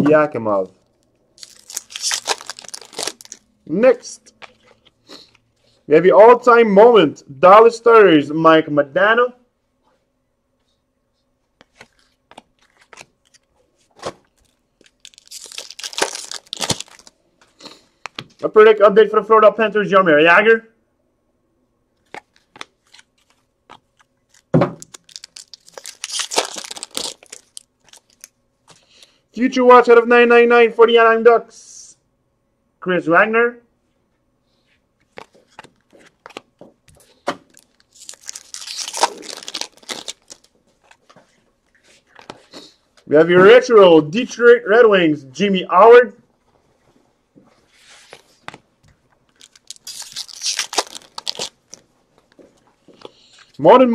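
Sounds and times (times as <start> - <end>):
card pack wrapper crinkling: 0.8 - 3.5, 11.6 - 17.2, 22.0 - 28.4, 35.1 - 41.1, 49.3 - 52.4.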